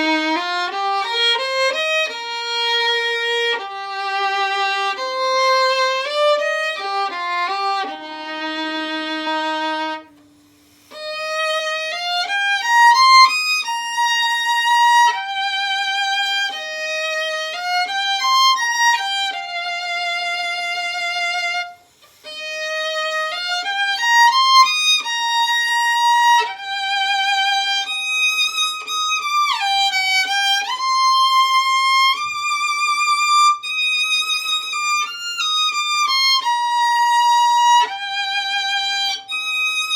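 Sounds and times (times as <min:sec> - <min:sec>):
solo violin melody: 0:00.0 - 0:39.9.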